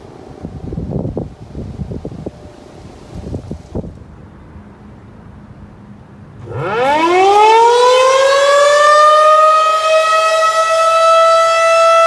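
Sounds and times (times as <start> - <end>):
wind buffeting microphone: 0.0 - 7.8.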